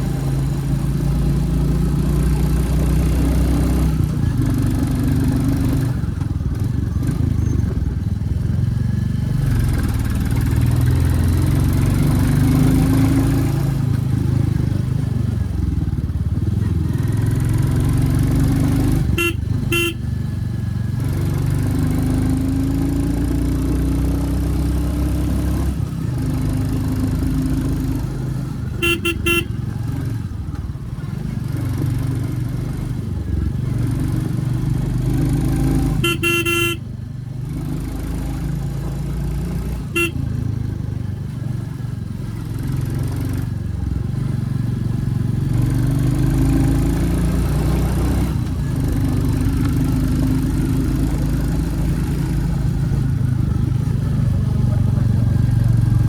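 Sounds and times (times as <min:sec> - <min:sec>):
motorcycle engine revving: 0:00.0 - 0:56.0
horn beeping: 0:19.1 - 0:20.1, 0:28.7 - 0:29.6, 0:36.0 - 0:36.9, 0:39.9 - 0:40.3.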